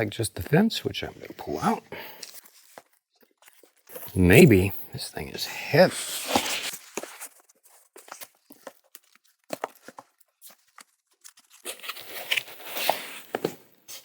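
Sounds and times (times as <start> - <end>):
packaging rustling and knocking: 6.3 - 11.0.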